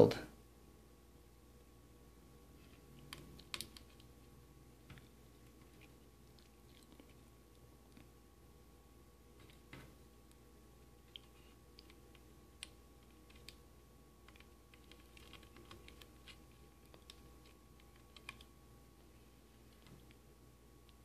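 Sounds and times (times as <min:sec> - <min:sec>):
low steady hum: 0:00.0 - 0:21.0
wires clicking into breadboard: 0:02.6 - 0:04.2, 0:11.0 - 0:13.6, 0:14.2 - 0:18.5.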